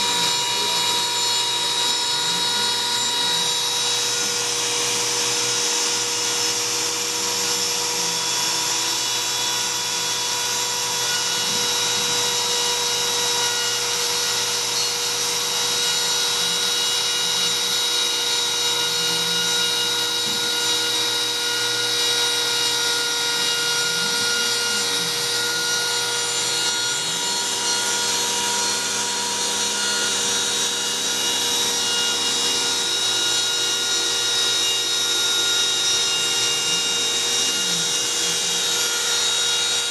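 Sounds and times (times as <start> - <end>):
router spindle whining: 0.0 - 39.9.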